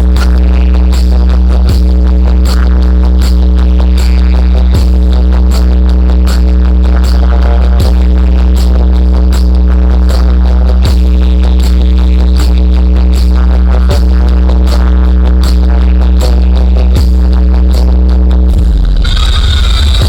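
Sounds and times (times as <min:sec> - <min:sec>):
heavy bass drone: 0:00.0 - 0:20.0
falling bass hits: 0:16.9 - 0:20.0.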